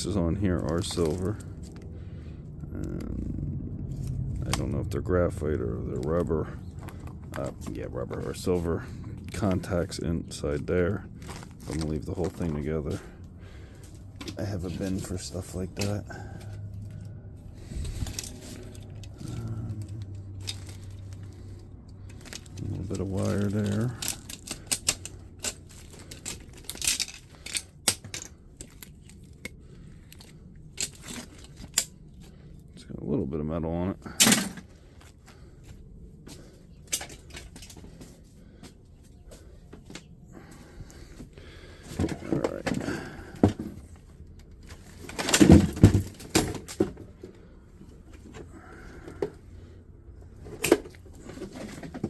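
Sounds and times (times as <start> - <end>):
plastic and metal parts clattering: 0.5 - 1.8, 11.0 - 32.4, 34.1 - 35.5, 36.2 - 38.7, 39.3 - 49.6, 50.3 - 52.0
knocks and rattles: 44.7 - 47.4.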